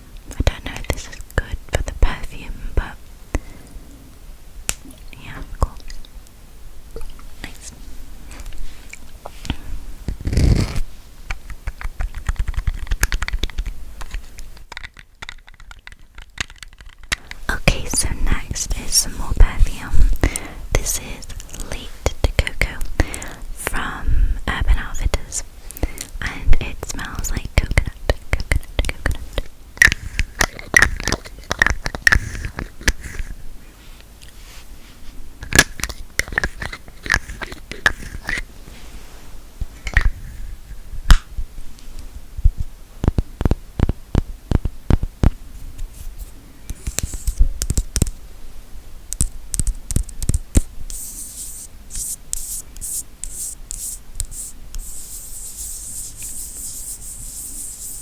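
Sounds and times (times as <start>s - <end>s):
tapping and clicking on small objects: 11.4s - 17.4s, 49.1s - 50.7s
high scratching sound: 50.9s - 58.0s.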